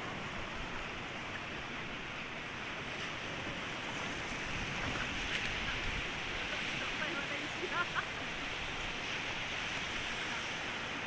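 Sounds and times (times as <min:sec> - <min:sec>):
waves washing onto beach: 0:00.0 - 0:11.0.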